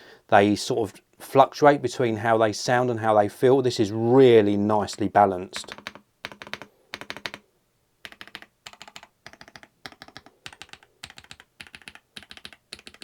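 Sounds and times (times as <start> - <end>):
typing on mechanical keyboard: 5.6 - 7.4, 8.0 - 13.0.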